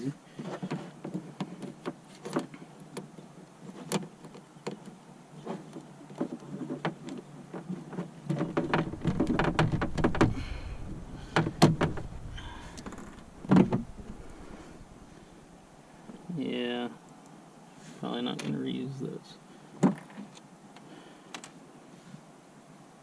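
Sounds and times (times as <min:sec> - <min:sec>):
plastic clicks and knocks: 0:06.1 - 0:14.3
heavy knock: 0:08.3 - 0:15.2
low rumble: 0:08.7 - 0:15.8.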